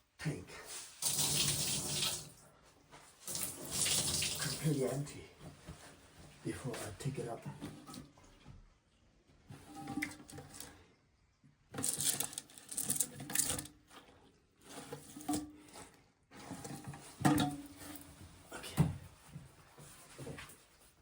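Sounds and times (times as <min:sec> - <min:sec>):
towel rubbing inside toilet tank: 0:13.9 - 0:17.2.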